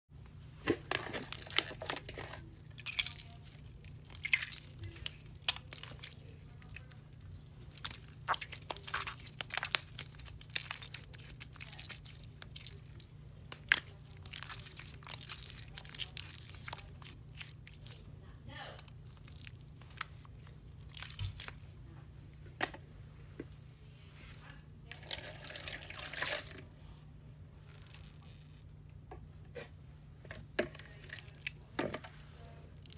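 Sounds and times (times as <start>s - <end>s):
hands crunching slime: 0.9s - 18.0s.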